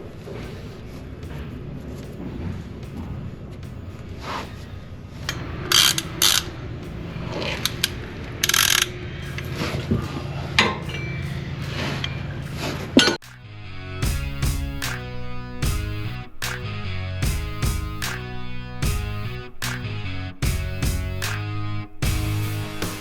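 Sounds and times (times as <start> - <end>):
steady low hum: 0.0 - 22.7.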